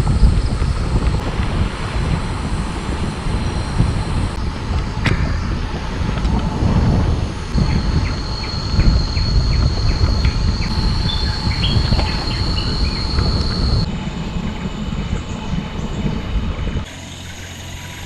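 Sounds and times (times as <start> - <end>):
rapid chirping insect calls: 0.0 - 4.7, 7.4 - 13.9
cicadas droning: 0.0 - 18.0
loud low rumble: 0.0 - 18.0.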